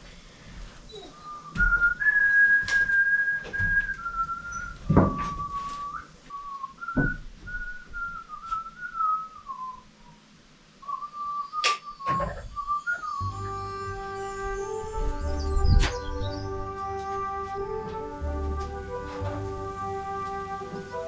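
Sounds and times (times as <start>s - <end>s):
person whistling a tune: 1.1s - 9.8s, 10.8s - 18.2s.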